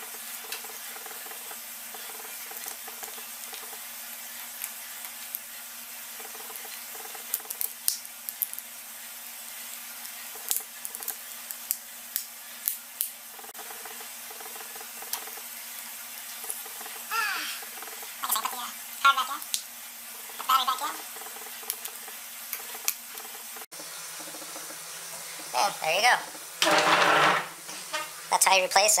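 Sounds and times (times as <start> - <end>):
steady hiss: 0.0 - 29.0.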